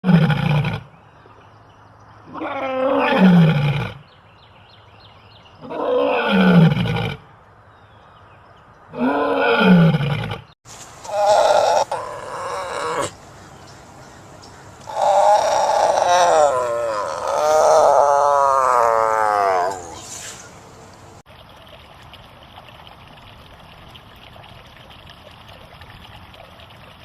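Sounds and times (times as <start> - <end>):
tiger roaring: 11.1 - 13.2, 14.8 - 20.1
high-pitched animal call: 14.8 - 20.5.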